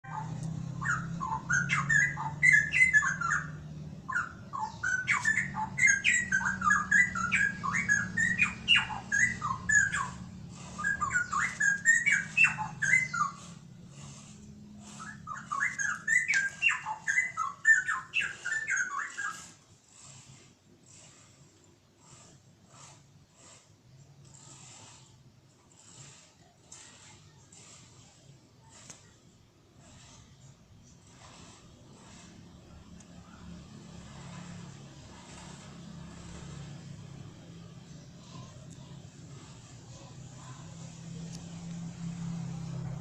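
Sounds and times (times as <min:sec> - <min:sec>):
bird singing whistled notes: 0:00.1 - 0:13.6, 0:14.9 - 0:19.6.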